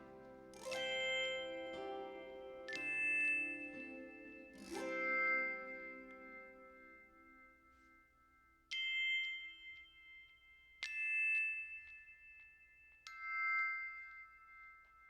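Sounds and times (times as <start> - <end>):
bell-like chime strikes: 0.0 - 8.1.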